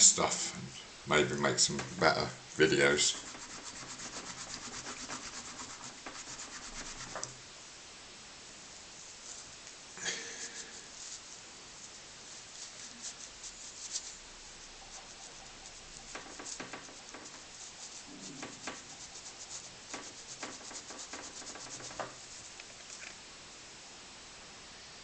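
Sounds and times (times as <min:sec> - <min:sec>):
cloth rubbing on brass: 0:02.6 - 0:07.4, 0:10.2 - 0:23.0.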